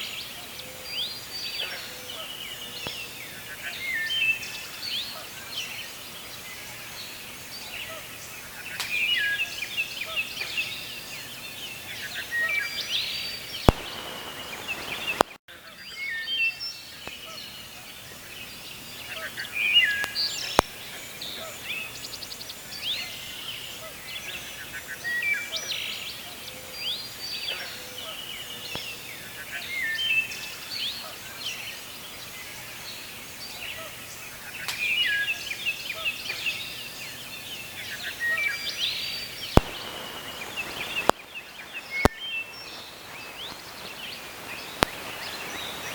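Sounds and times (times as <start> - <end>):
background hiss: 0.0 - 45.9
songbirds singing: 0.0 - 45.9
sharp clicks: 13.6 - 15.4, 39.6 - 41.2.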